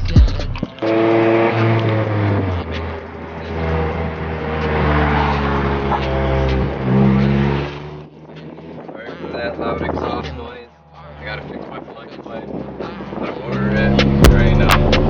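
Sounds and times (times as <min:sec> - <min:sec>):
car engine pulling under load: 0:00.7 - 0:11.8.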